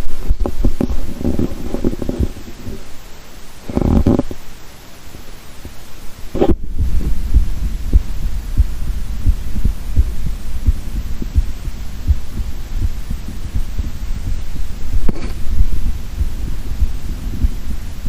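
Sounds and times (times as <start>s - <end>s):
heartbeat thumps: 0.3s - 2.5s, 6.4s - 18.0s
constant low rumble: 5.6s - 18.0s.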